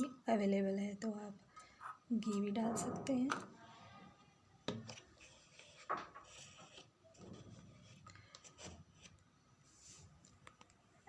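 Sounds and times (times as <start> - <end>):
soft rubbing and scraping: 2.6 - 10.3.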